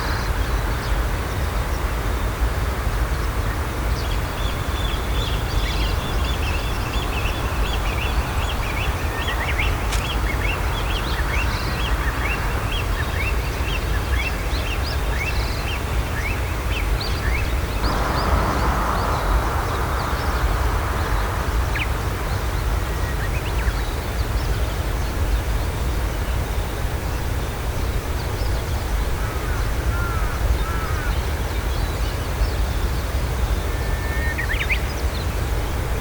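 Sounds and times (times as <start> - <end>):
distant traffic rumble: 4.2 - 25.7
loud rushing noise: 17.8 - 24.4.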